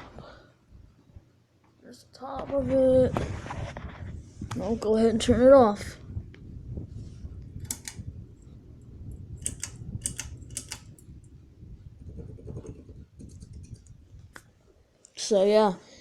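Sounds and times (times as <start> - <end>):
ceiling fan running: 0.0 - 16.0
fan clicks and rattles: 7.3 - 14.5.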